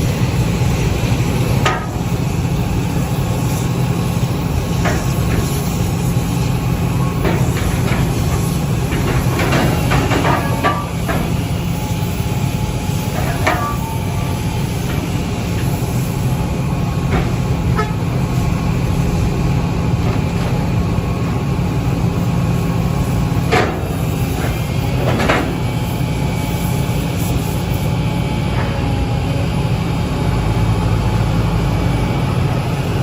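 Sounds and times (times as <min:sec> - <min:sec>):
heavy machinery humming: 0:00.0 - 0:33.0
sharp metallic clanks: 0:01.6 - 0:02.4, 0:04.3 - 0:18.2, 0:23.4 - 0:26.1.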